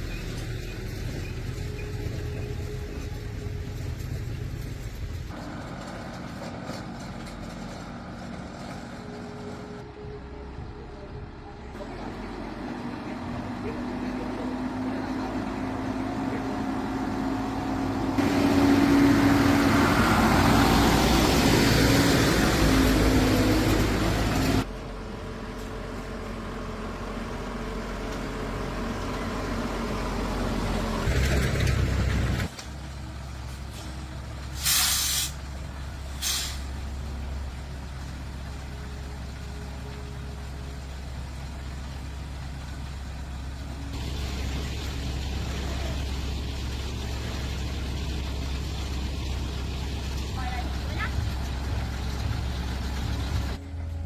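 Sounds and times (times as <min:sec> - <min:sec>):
heavy vehicle engine running: 0:00.0 - 0:54.0
air brake hiss: 0:34.6 - 0:35.4, 0:36.1 - 0:36.7.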